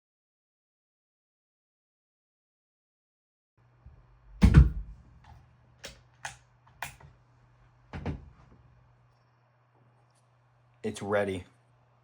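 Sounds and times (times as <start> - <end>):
heavy thump: 4.4 - 5.0.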